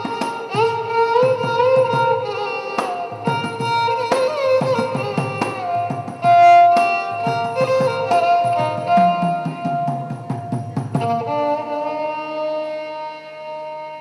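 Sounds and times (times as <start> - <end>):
hand-drum strokes: 0.0 - 13.4
violin melody sliding between notes: 0.0 - 14.0.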